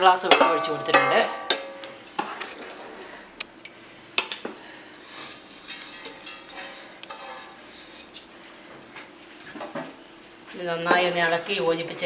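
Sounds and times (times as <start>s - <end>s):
boiling water hiss: 2.0s - 12.0s
ladle scraping pot: 5.0s - 8.2s.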